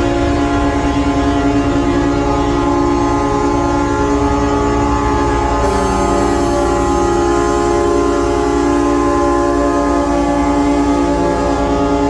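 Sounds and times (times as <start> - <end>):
truck air horns chord: 2.7 - 12.0.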